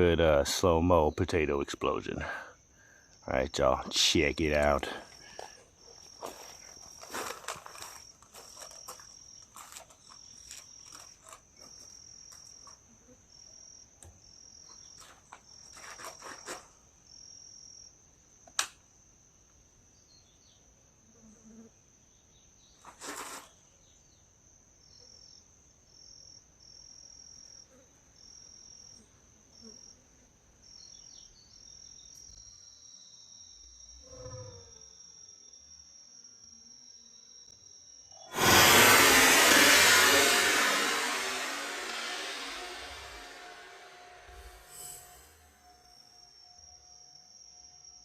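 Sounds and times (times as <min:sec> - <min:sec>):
crickets trilling: 0:00.8 - 0:18.6
short rushing burst: 0:38.3 - 0:45.8.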